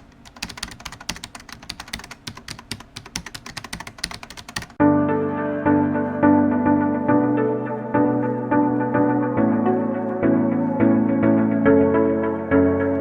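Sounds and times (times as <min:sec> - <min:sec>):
computer keyboard typing: 0:00.0 - 0:04.8
music with held notes: 0:04.8 - 0:13.0.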